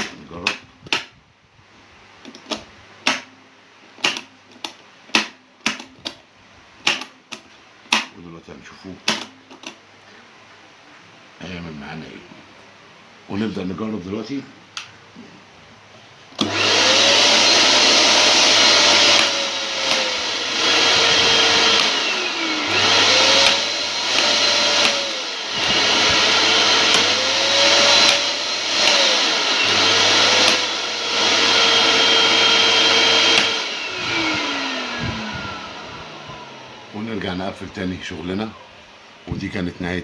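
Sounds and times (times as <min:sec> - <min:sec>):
vacuum cleaner motor whine: 0:16.4 - 0:38.8.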